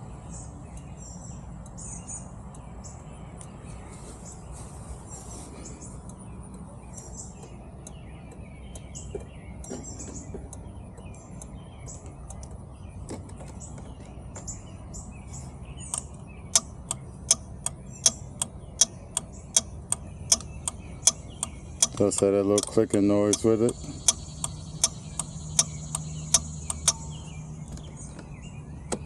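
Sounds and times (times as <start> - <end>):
birds chirping: 0.0 - 29.0
turn signal flasher clicking: 6.0 - 14.6, 15.7 - 29.0.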